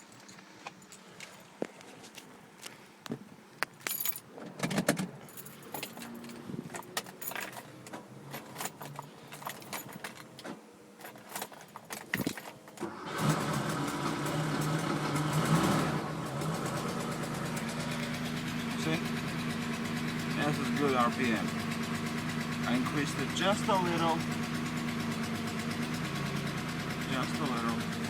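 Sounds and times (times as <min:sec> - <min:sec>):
handling clicks and rattles: 0:03.6 - 0:12.8
car engine idling: 0:12.9 - 0:28.0.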